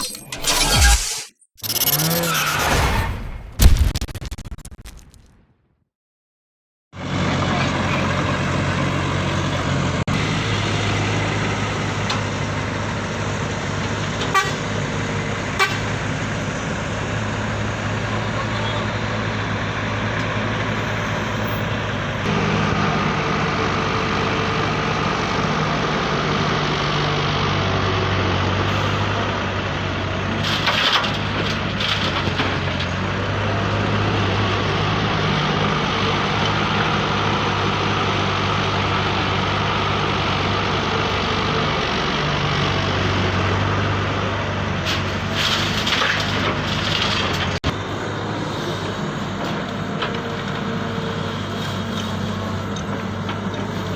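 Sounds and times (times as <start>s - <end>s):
scraping and crunching: 0.0s - 5.4s, 44.9s - 47.6s.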